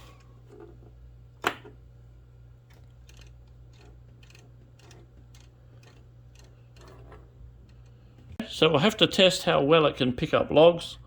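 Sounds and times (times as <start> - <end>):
steady low hum: 0.0 - 11.0
plastic winch mechanism clicking: 2.7 - 8.0.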